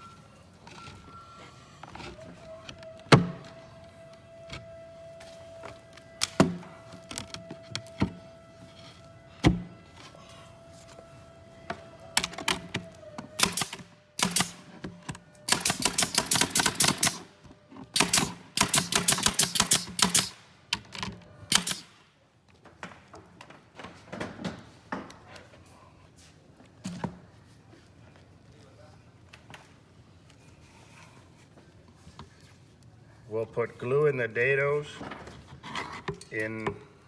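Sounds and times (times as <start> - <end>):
rapid sharp nail gun clicks: 13.4 - 14.6, 15.5 - 17.3, 18.0 - 20.4, 21.5 - 22.0
nail gun shots: 13.4 - 14.7, 15.5 - 17.3, 17.9 - 20.5, 21.5 - 22.0.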